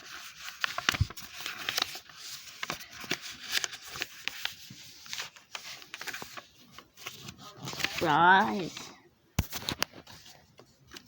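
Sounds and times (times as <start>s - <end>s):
paper rustling and folding: 0.0s - 11.0s.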